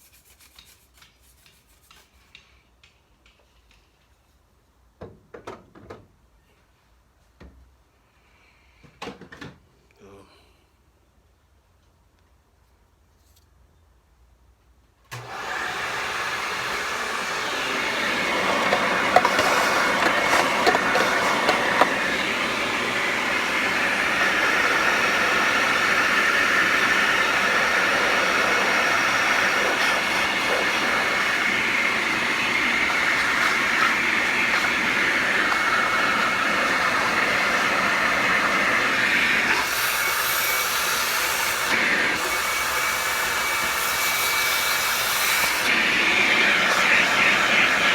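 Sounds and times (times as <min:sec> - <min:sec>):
vacuum cleaner motor whining: 0:15.1 - 0:47.9.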